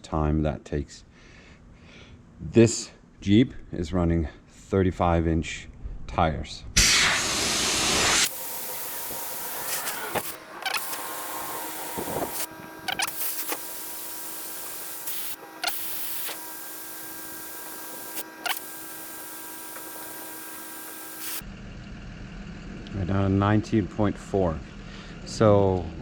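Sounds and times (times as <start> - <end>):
air hissing from tires: 6.8 - 21.4.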